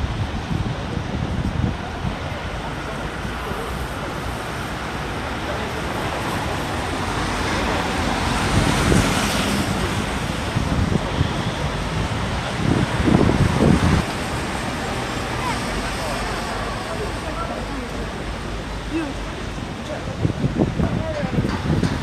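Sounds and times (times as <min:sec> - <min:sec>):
wind on microphone: 0:00.0 - 0:03.2, 0:07.7 - 0:15.4, 0:19.4 - 0:22.0
street traffic: 0:00.0 - 0:22.0.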